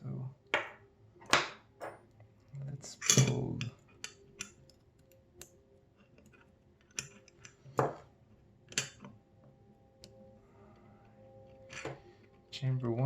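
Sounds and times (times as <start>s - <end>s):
lock parts clicking: 2.9s - 5.2s, 6.0s - 7.7s.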